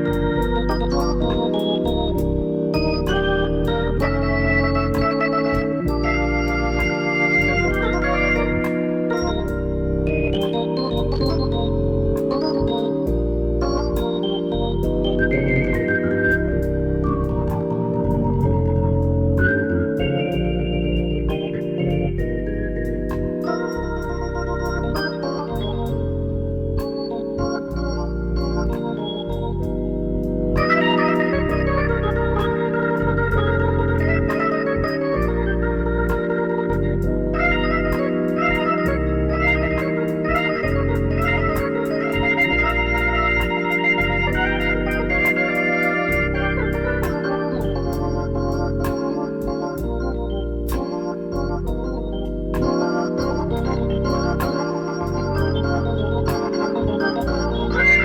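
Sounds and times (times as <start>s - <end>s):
low bass notes: 0.0s - 58.0s
organ playing held chords: 0.0s - 58.0s.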